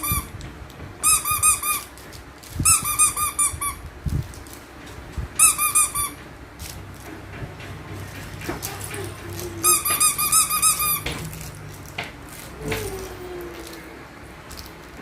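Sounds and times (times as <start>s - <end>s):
rubber toy squeaking: 0.0s - 0.3s, 1.0s - 2.0s, 2.6s - 3.8s, 5.4s - 6.2s, 9.3s - 11.5s.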